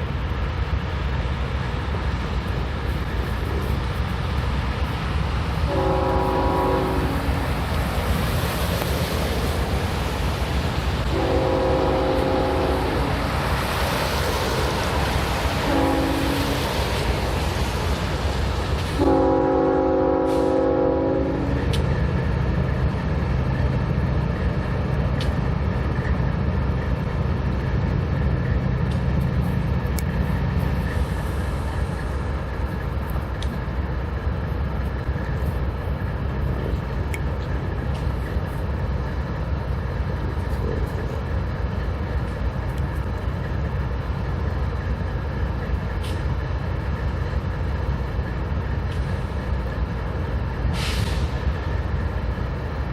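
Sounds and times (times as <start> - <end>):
train rumbling past: 0.0 - 52.9
locomotive air horn: 5.7 - 7.4, 11.1 - 13.2, 15.6 - 16.6, 19.0 - 21.6.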